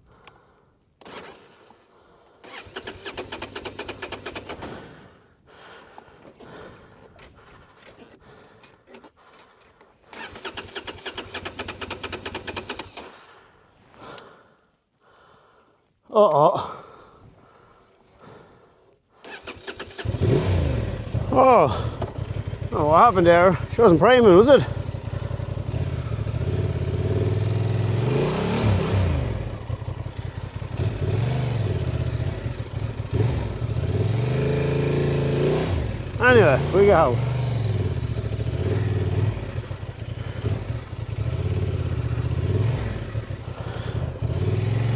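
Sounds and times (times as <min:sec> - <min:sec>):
motorcycle starter cranking: 0:02.4 - 0:05.0, 0:07.1 - 0:13.3, 0:19.2 - 0:22.8
motorcycle engine revving: 0:02.4 - 0:05.1, 0:10.1 - 0:13.3, 0:19.2 - 0:44.9.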